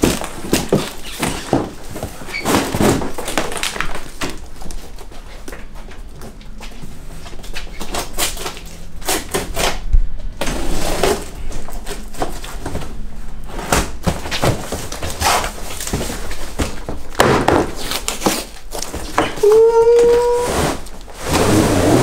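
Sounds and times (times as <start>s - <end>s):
packaging crackling and ripping: 0.0s - 5.0s.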